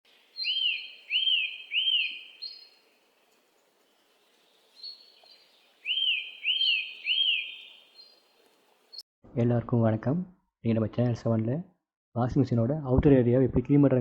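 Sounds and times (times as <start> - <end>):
bird chirping: 0.1 - 9.0.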